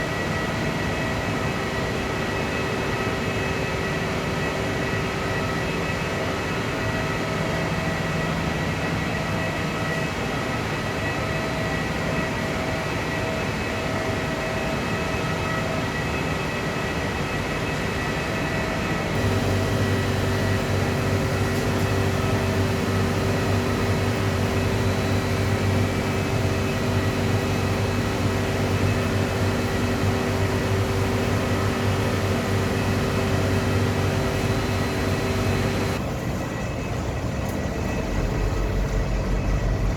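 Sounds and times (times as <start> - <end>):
high machine whine: 0.0 - 39.9
industrial machinery droning: 14.3 - 39.9.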